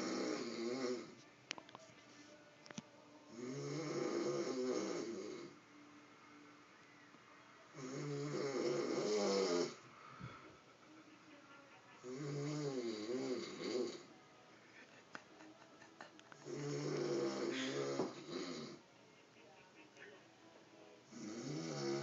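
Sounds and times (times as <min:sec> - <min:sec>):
man snoring heavily: 0:00.0 - 0:01.2, 0:03.3 - 0:05.6, 0:07.8 - 0:09.8, 0:12.1 - 0:14.1, 0:16.4 - 0:18.8, 0:21.1 - 0:22.0.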